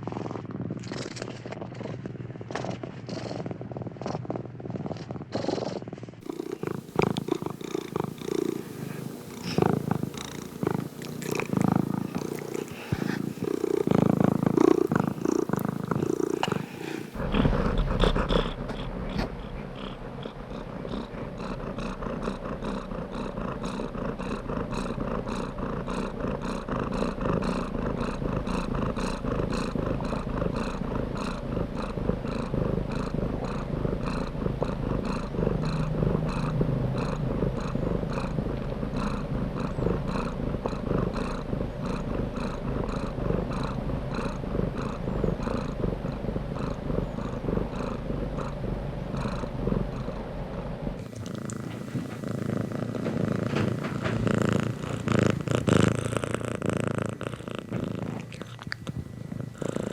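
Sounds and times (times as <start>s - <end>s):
cat purring: 0.0s - 59.9s.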